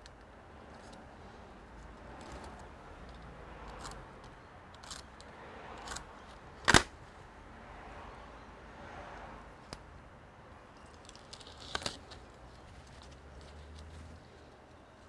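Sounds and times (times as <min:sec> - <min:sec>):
sharp loud click: 0:06.7 - 0:06.9.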